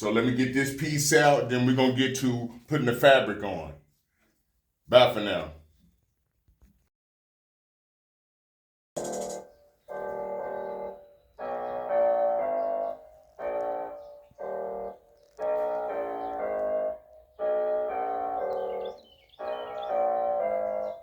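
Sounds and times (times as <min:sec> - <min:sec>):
instrumental music with held chords: 0:09.0 - 0:21.0.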